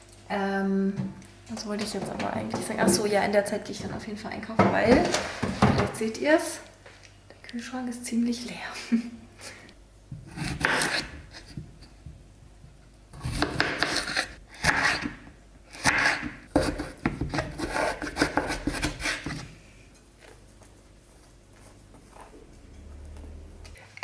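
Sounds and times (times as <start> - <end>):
scraping and rubbing of kitchen things: 15.8 - 23.7.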